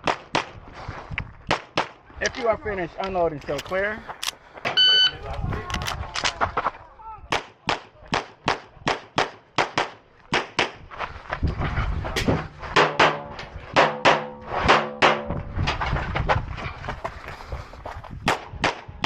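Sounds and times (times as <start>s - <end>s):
rapid pistol shots: 7.3s - 10.8s, 12.8s - 15.3s, 18.3s - 19.0s.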